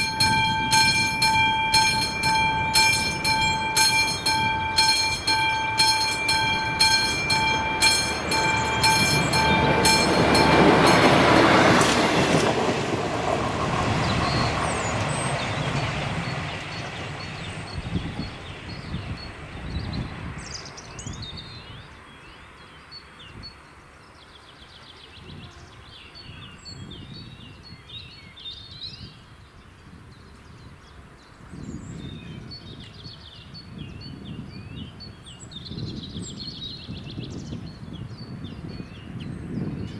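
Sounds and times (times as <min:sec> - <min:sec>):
level crossing bell ringing: 0:00.0 - 0:11.5
train rumble: 0:00.0 - 0:21.3
birds chirping: 0:00.0 - 0:39.9.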